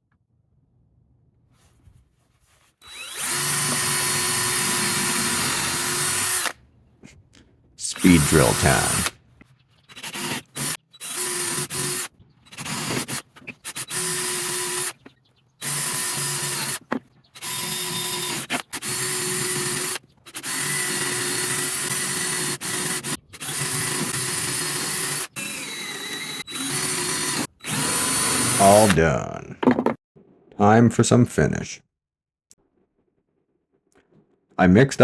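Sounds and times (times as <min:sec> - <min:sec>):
power drill boring into wood: 0:02.8 - 0:06.6, 0:07.8 - 0:09.2, 0:09.8 - 0:29.0.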